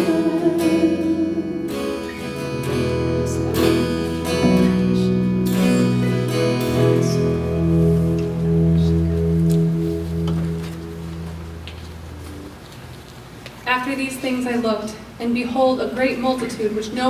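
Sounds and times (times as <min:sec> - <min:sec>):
acoustic guitar strumming chords: 0:00.0 - 0:13.0
band instrumental backing: 0:00.0 - 0:13.4.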